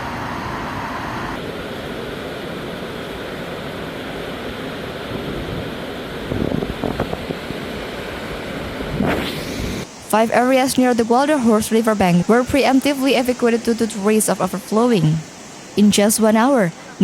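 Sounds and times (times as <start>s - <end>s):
rushing water: 0.0s - 17.0s
wind on microphone: 5.1s - 14.0s.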